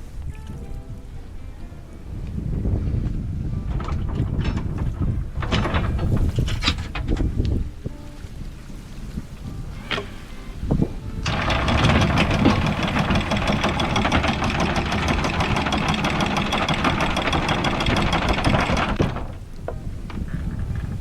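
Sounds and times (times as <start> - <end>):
anchor chain clattering: 3.7 - 7.4, 11.2 - 21.0.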